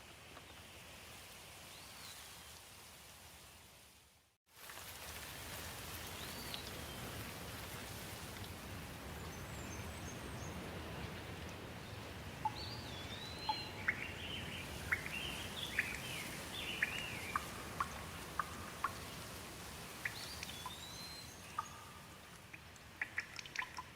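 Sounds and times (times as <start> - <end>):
steady rain: 0.0 - 23.9
birds chirping: 12.4 - 19.2, 20.0 - 22.3.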